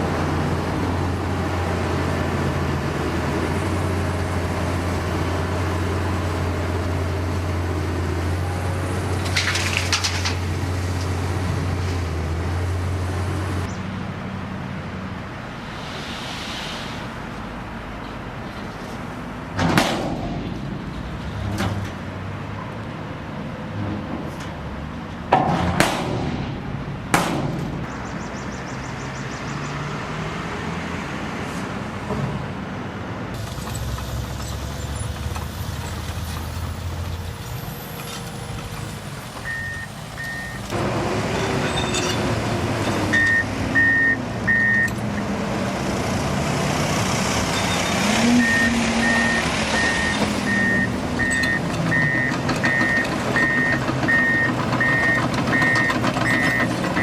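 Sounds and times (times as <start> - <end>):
diesel engine running: 33.4 - 57.0
reversing alarm beeps: 39.4 - 40.6, 43.1 - 45.0, 47.6 - 57.0.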